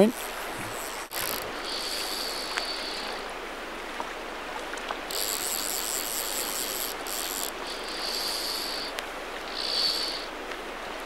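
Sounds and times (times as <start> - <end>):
fishing reel drag buzzing: 0.0 - 3.2, 5.1 - 10.3
river rushing: 0.0 - 11.0.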